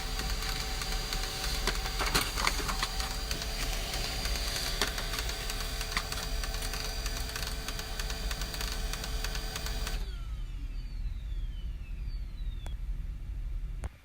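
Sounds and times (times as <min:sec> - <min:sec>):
printer clattering and whirring: 0:00.0 - 0:10.3
falling whine: 0:09.6 - 0:13.9
low hum: 0:10.0 - 0:14.0.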